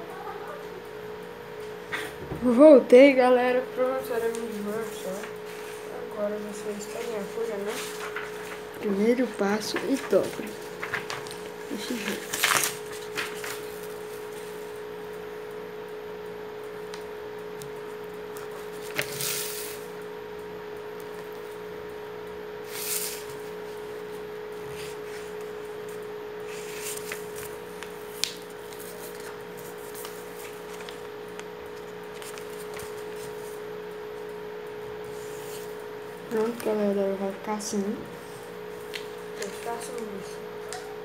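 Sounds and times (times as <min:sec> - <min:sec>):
steady low hum: 0:00.0 - 0:41.0
paper rustling while folded: 0:04.0 - 0:14.8, 0:18.3 - 0:19.9, 0:22.6 - 0:33.6, 0:35.1 - 0:36.9, 0:38.2 - 0:40.2.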